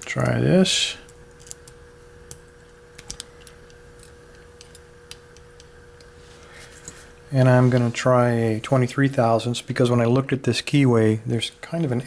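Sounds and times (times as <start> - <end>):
faint steady hum: 0.0 - 12.0.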